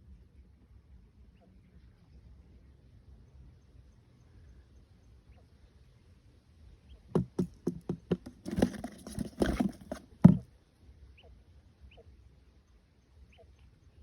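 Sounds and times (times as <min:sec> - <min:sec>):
knocks and taps: 0:07.1 - 0:10.4
rustling: 0:07.2 - 0:10.4.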